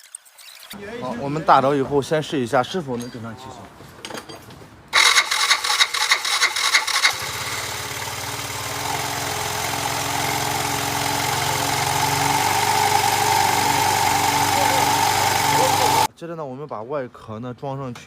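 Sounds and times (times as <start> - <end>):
scooter engine cranking: 5.0 - 16.1
scooter engine idling: 5.0 - 16.1.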